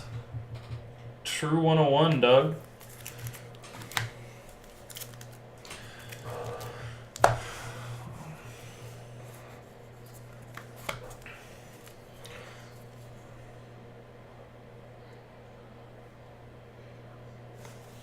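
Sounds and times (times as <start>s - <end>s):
cards rubbing and rustling: 2.6s - 7.3s, 9.2s - 13.2s.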